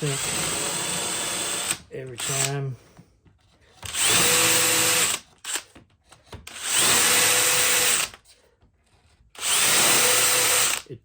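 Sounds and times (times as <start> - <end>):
power drill whining into wood: 0.0 - 2.6, 3.9 - 5.7, 6.4 - 8.2, 9.4 - 10.9.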